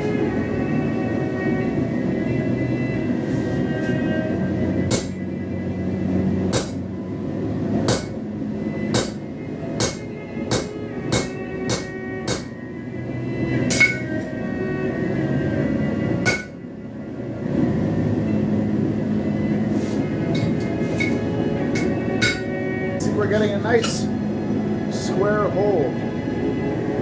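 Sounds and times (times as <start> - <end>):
low rumbling noise: 0.0 - 27.0
hammer blows on hot steel: 4.8 - 5.2, 6.5 - 6.9, 7.9 - 8.2, 8.9 - 9.2, 9.8 - 12.5, 13.7 - 14.2, 16.2 - 16.6, 20.3 - 22.5.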